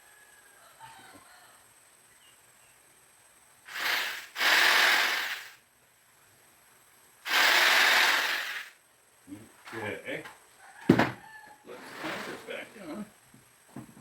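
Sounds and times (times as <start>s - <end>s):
short hissing rushes: 3.7s - 5.6s, 7.2s - 8.8s.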